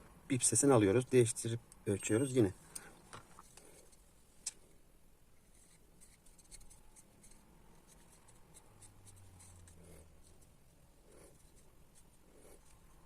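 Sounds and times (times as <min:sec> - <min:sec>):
faint low hum: 0:00.0 - 0:13.0.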